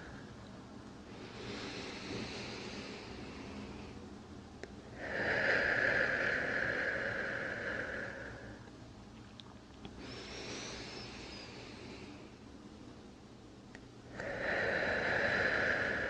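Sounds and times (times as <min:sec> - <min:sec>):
deep breathing close to microphone: 0:00.0 - 0:00.4, 0:01.0 - 0:04.2, 0:04.8 - 0:08.7, 0:10.0 - 0:12.6, 0:14.0 - 0:16.0.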